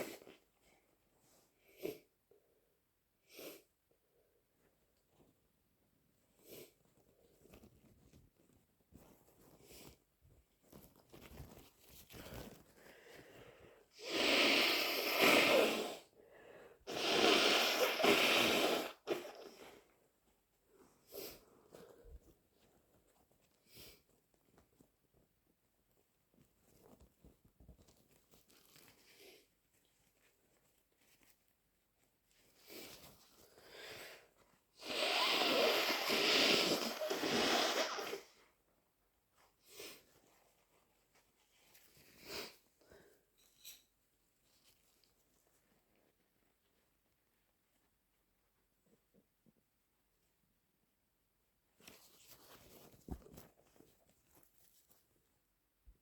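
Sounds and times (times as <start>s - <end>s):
person blowing nose: 13.9s - 16.2s, 16.9s - 19.8s, 34.8s - 38.4s.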